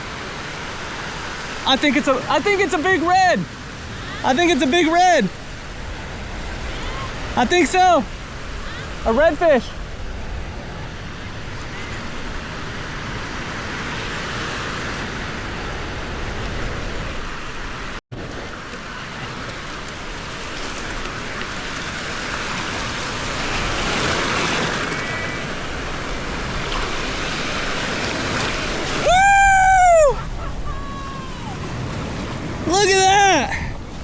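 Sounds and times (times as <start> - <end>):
surf washing on beach: 0.0 - 34.0
loud high call: 29.0 - 31.8.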